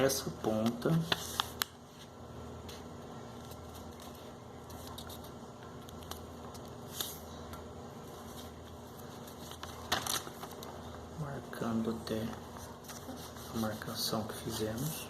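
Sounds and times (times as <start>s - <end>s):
paper rustling and crinkling: 8.0s - 11.0s, 12.2s - 15.0s.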